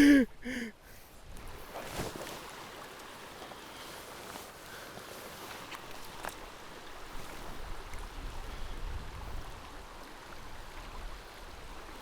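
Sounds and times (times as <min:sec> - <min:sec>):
river water rushing: 0:01.6 - 0:08.4.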